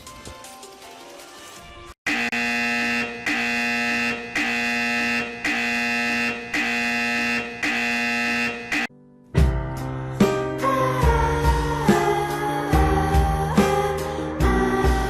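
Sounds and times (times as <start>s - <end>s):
electronic buzzer tone pulses: 2.1s - 8.9s.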